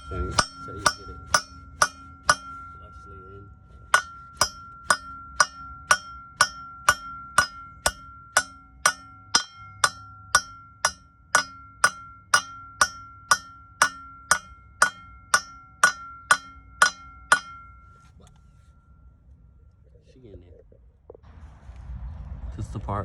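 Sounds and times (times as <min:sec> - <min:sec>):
hammer striking metal: 0:00.0 - 0:18.1.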